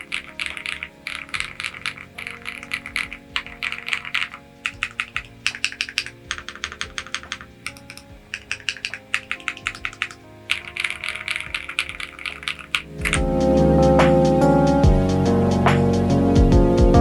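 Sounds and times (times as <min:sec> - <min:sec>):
mechanical keyboard typing: 0:00.0 - 0:13.6.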